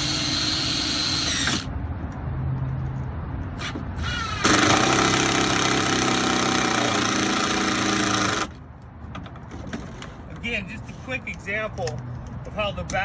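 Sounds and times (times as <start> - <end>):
power drill whining: 0.0 - 1.7, 3.6 - 8.5.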